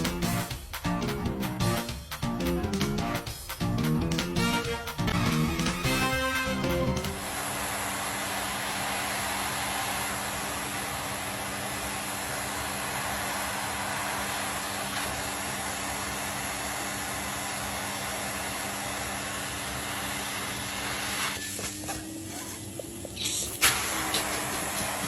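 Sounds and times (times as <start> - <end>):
vacuum cleaner running: 5.1 - 25.0.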